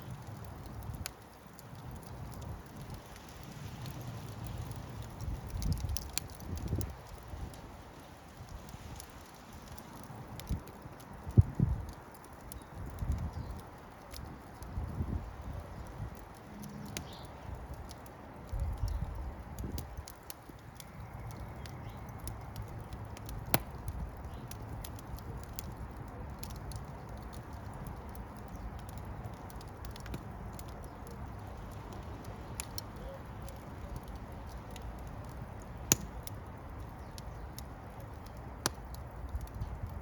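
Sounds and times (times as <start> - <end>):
fire crackling: 0.0 - 40.0.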